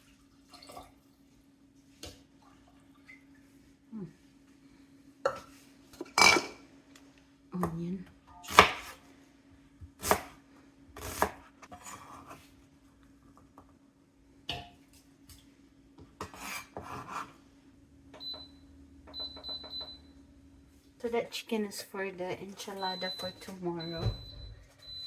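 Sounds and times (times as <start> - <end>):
appliance hum: 0.0 - 25.0
dishes and utensils clinking: 5.3 - 6.6
short electronic beeps: 22.8 - 25.0.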